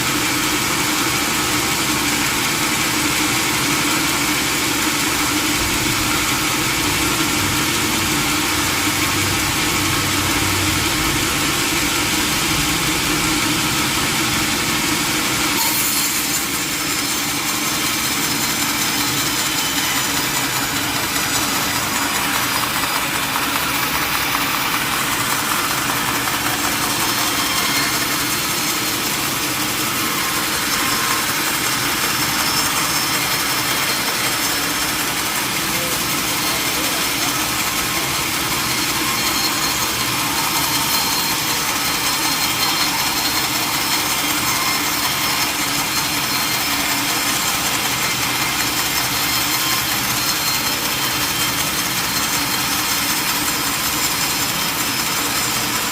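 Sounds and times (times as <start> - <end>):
sawmill saw cutting log: 0.0 - 55.9.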